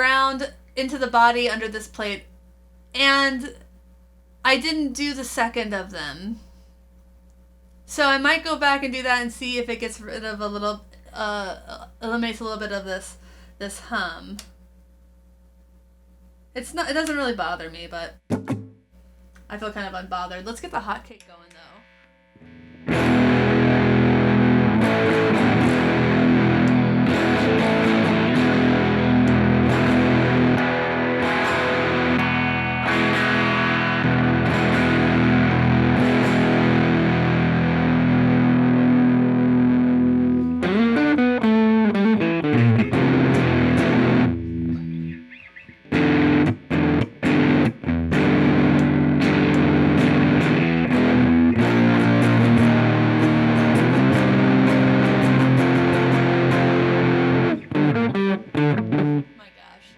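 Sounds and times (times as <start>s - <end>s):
distorted electric guitar: 21.8s - 59.5s.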